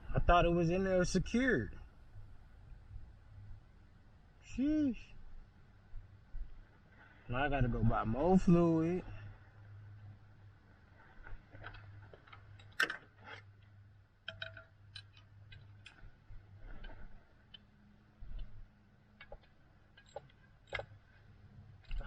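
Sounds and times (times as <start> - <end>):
faint low hum: 0.0 - 22.0
hand tools clicking and tapping: 14.3 - 16.0, 19.2 - 21.0.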